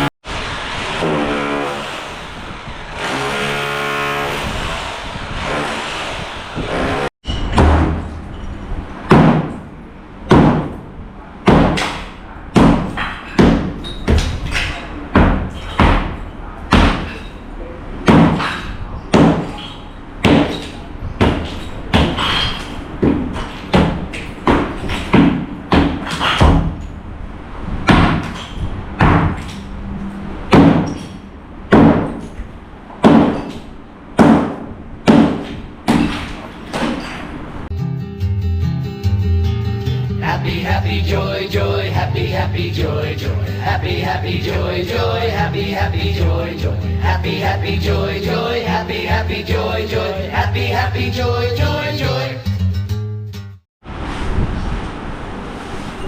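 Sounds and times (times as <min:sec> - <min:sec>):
heavy hammer blows on hard material: 0:00.0 - 0:08.3, 0:09.0 - 0:17.3, 0:18.0 - 0:26.9, 0:27.7 - 0:32.4, 0:33.0 - 0:37.1.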